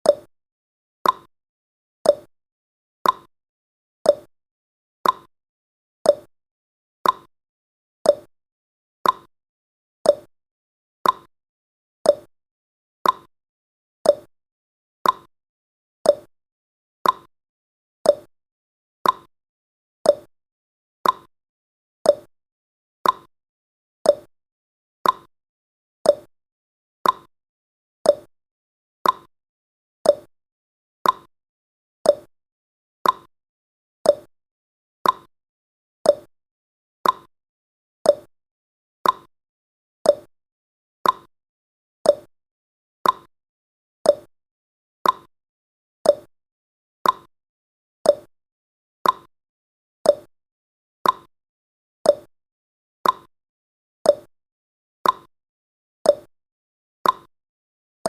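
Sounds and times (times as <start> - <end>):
timer ticking: 0.0 - 0.3, 1.0 - 1.3, 2.1 - 2.3, 3.0 - 3.3, 4.1 - 4.3, 5.0 - 5.3, 6.1 - 6.3, 7.0 - 7.3, 8.1 - 8.3, 9.0 - 9.3, 10.1 - 10.3, 11.0 - 11.3, 12.1 - 12.3, 13.0 - 13.3, 14.1 - 14.3, 15.0 - 15.3, 16.1 - 16.3, 17.0 - 17.3, 18.1 - 18.3, 19.0 - 19.3, 20.1 - 20.3, 21.0 - 21.3, 22.1 - 22.3, 23.0 - 23.3, 24.1 - 24.3, 25.0 - 25.3, 26.1 - 26.3, 27.0 - 27.3, 28.0 - 28.3, 29.0 - 29.3, 30.0 - 30.3, 31.0 - 31.3, 32.1 - 32.3, 33.0 - 33.3, 34.1 - 34.3, 35.0 - 35.3, 36.0 - 36.3, 37.0 - 37.3, 38.1 - 38.3, 39.0 - 39.3, 40.0 - 40.3, 41.0 - 41.3, 42.0 - 42.3, 43.0 - 43.3, 44.1 - 44.3, 45.0 - 45.3, 46.0 - 46.3, 47.0 - 47.3, 48.1 - 48.3, 49.0 - 49.3, 50.1 - 50.3, 51.0 - 51.3, 52.1 - 52.3, 53.0 - 53.3, 54.1 - 54.3, 55.0 - 55.3, 56.1 - 56.3, 57.0 - 57.3.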